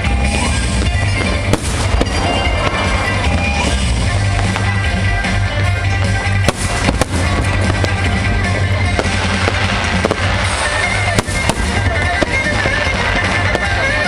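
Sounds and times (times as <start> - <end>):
fireworks bursting: 0.0 - 14.0
music: 0.0 - 14.0
sharp bangs: 0.0 - 14.0.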